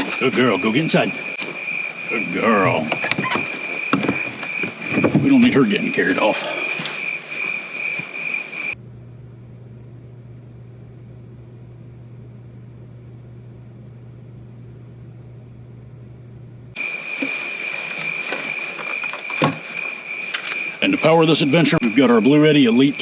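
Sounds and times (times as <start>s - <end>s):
high insect drone: 0.0s - 10.4s, 16.7s - 23.0s
steady low hum: 0.0s - 17.0s.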